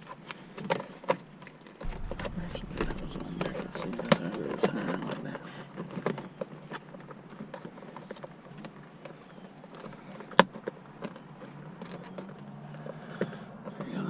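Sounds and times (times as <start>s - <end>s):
sharp loud click: 1.9s - 5.2s.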